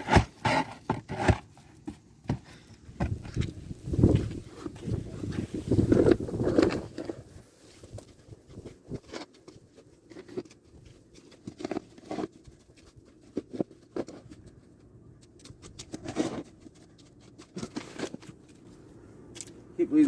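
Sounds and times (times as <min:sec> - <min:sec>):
snow shovel crunching and scraping: 0:00.0 - 0:01.9, 0:15.9 - 0:18.3.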